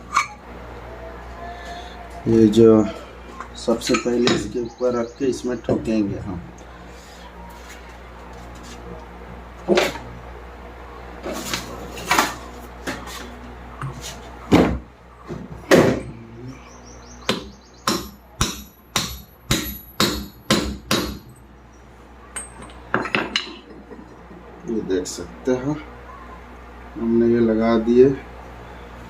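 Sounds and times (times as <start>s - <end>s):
hammer tapping on metal: 17.3s - 21.3s.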